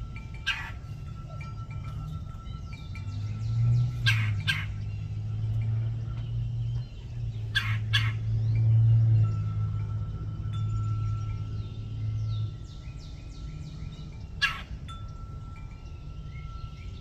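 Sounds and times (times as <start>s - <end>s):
woodpecker raspy calls: 0.0s - 1.7s, 2.4s - 8.4s, 14.4s - 14.9s
steady low hum: 0.0s - 17.0s.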